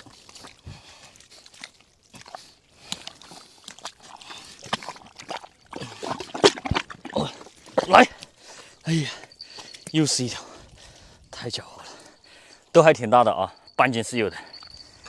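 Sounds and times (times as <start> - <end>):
water splashing: 0.0 - 8.2
hands squelching in wet mud: 0.0 - 9.9.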